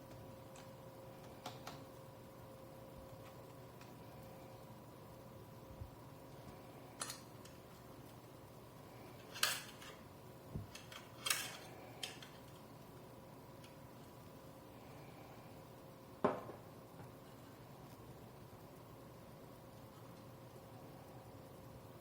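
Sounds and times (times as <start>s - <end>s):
metallic clicks of small parts: 7.0s - 8.2s, 9.2s - 10.0s, 10.7s - 12.7s.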